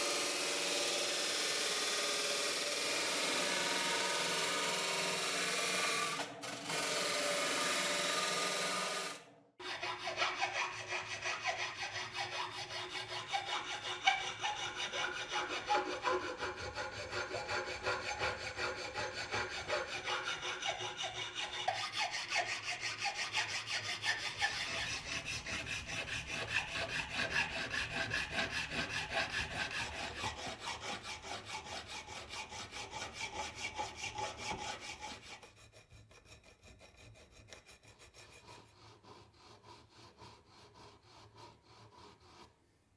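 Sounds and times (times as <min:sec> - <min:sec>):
motor-driven tool running: 0:00.0 - 0:09.2
hand saw sawing: 0:00.0 - 0:42.8.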